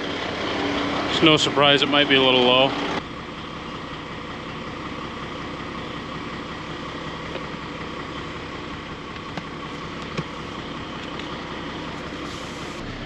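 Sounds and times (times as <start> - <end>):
vehicle engine idling: 0.0 - 13.0.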